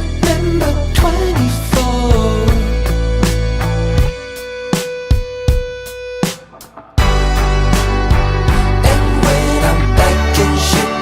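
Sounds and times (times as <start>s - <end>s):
background music with beat: 0.0s - 11.0s.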